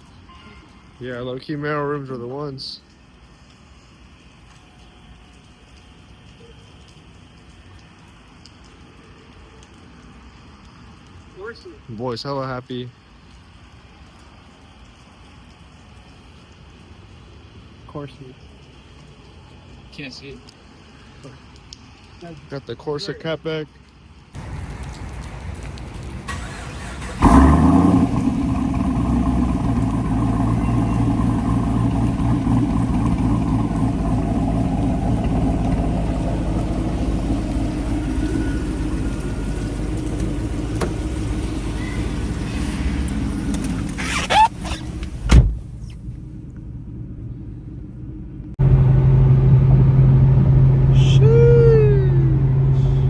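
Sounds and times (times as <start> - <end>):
road noise: 24.0 - 53.0
car engine running: 24.4 - 46.4, 48.6 - 53.0.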